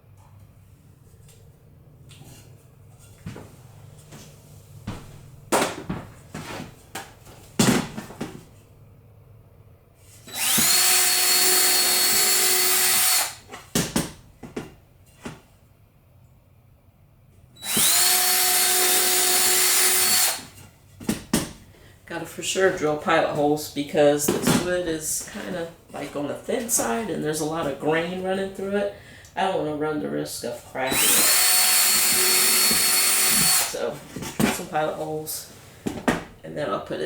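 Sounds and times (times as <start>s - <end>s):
knocks of handling board: 4.9s - 8.4s
power drill spinning: 10.2s - 13.5s, 17.6s - 20.6s, 30.8s - 34.0s.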